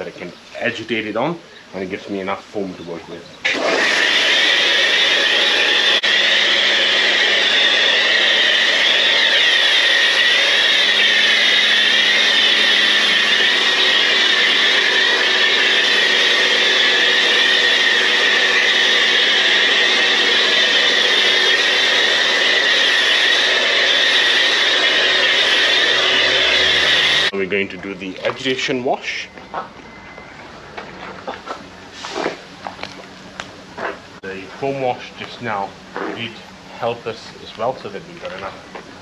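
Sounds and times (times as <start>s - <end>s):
pressure washer spraying water: 3.4s - 27.3s.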